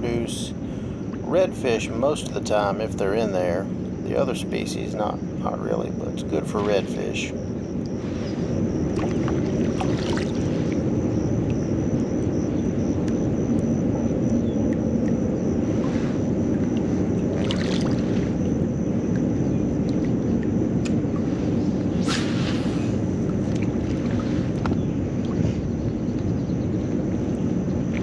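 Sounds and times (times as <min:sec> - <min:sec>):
wind and water rushing: 0:00.0 - 0:28.0
brief swishes: 0:22.0 - 0:22.9.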